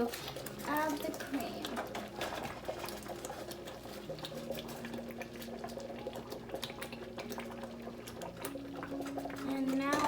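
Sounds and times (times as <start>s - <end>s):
gravy bubbling in a pan: 0.0s - 10.0s.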